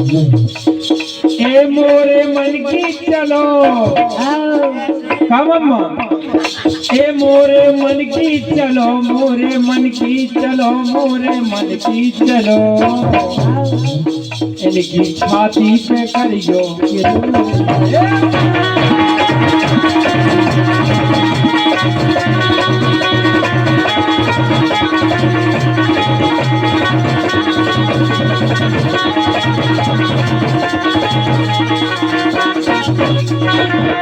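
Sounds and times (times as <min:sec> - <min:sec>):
hand drums: 0:00.0 - 0:34.0
sustained melodic accompaniment: 0:00.0 - 0:34.0
rattles: 0:06.3 - 0:33.8
repeating bass line: 0:17.2 - 0:33.5.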